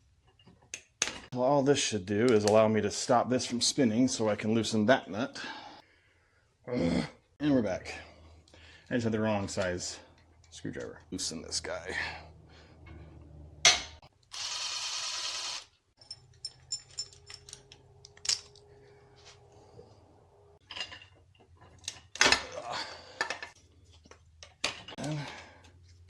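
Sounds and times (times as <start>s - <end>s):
power tool running: 14.3s - 15.7s
metal tools clicking and tapping: 16.0s - 18.7s.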